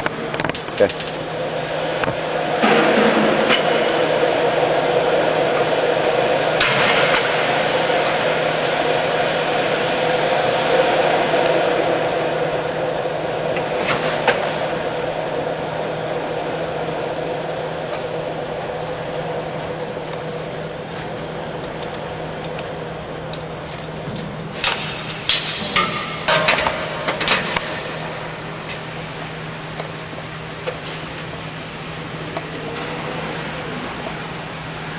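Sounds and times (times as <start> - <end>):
steady mechanical hum: 0.0 - 34.9.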